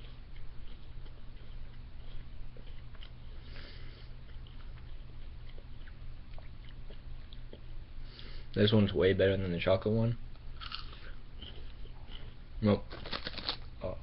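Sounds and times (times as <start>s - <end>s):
chewing crunches: 0.0s - 7.7s, 10.3s - 13.7s
steady low hum: 0.0s - 14.0s.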